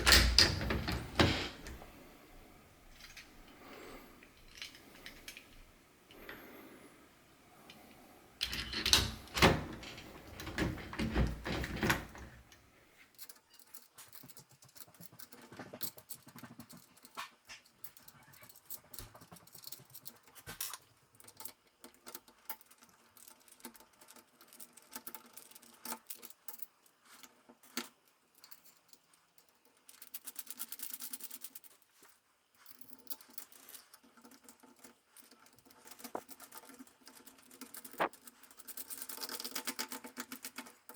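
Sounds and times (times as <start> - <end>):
metal lock hardware clinking: 0.0 - 1.9, 8.4 - 12.5.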